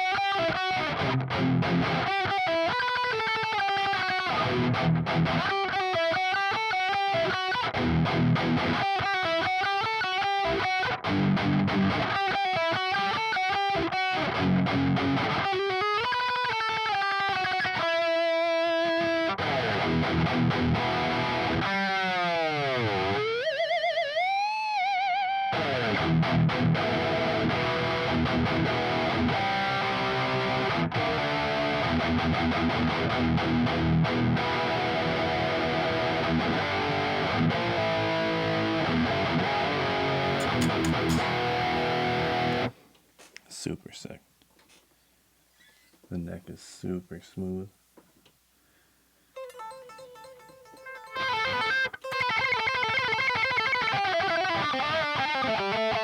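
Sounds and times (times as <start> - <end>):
distorted electric guitar riffs: 0.0 - 42.8, 49.4 - 56.0.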